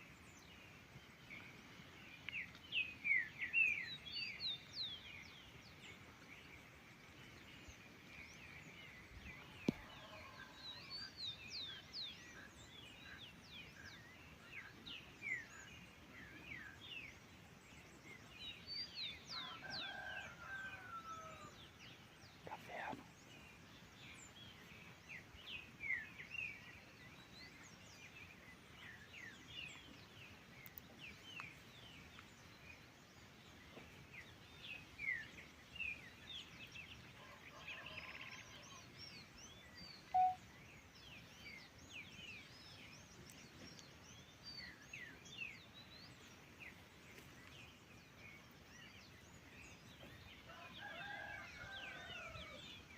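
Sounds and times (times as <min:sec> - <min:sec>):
faint birdsong chirps: 0:00.0 - 0:52.9
low bird call: 0:40.1 - 0:40.4.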